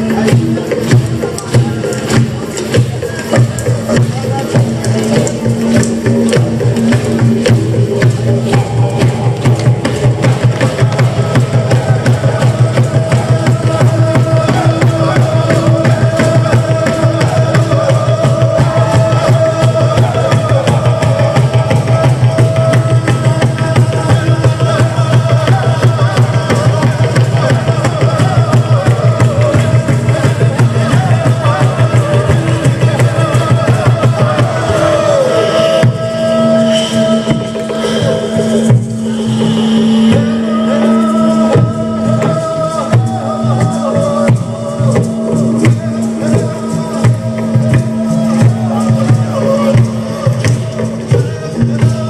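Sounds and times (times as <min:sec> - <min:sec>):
fast steady drumming: 0:00.0 - 0:52.0
long held tone: 0:35.2 - 0:51.6.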